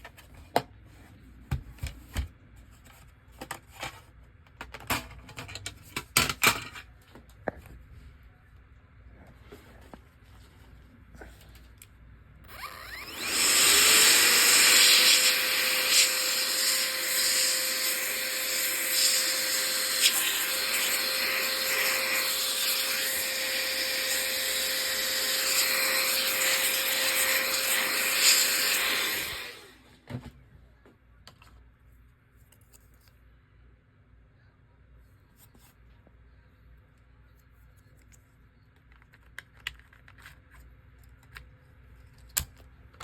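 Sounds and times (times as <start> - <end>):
electric motor humming: 12.5 - 29.8.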